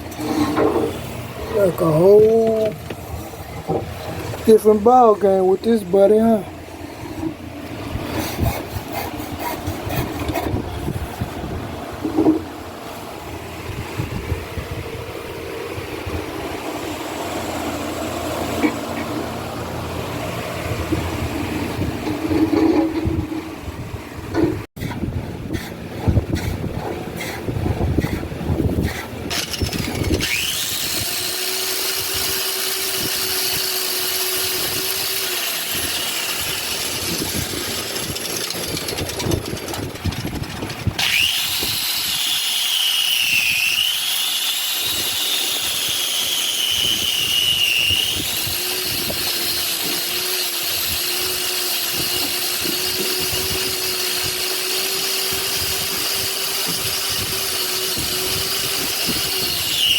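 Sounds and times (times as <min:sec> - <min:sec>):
electric power tool whining: 0:29.3 - 0:59.9.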